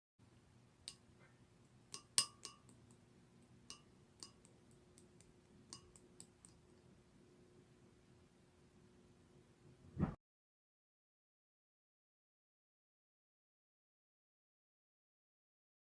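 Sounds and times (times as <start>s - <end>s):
faint low hum: 0.2s - 10.2s.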